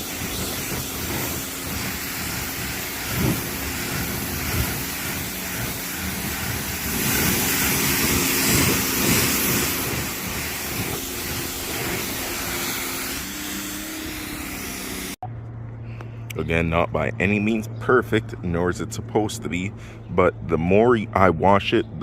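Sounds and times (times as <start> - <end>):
water spray hissing: 0.0 - 15.2
pressure washer motor hum: 0.0 - 15.3.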